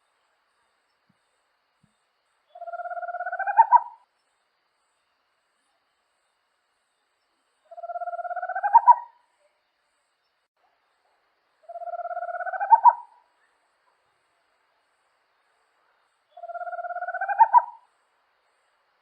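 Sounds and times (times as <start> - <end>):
owl purring trill call: 2.5 - 4.0, 7.7 - 9.2, 11.6 - 13.2, 16.4 - 17.9.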